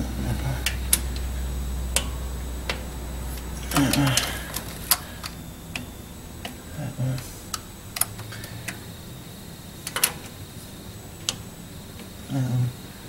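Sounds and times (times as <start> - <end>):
short low hums: 0.0 - 13.0
torque wrench clicking: 1.9 - 6.6, 9.8 - 10.4.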